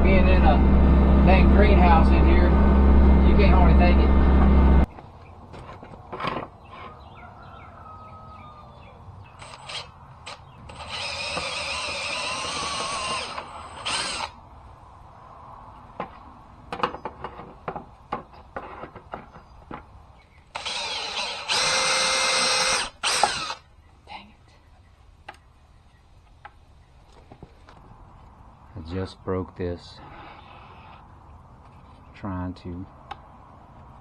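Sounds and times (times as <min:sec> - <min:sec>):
power drill drilling: 0:09.4 - 0:14.4, 0:20.5 - 0:23.6.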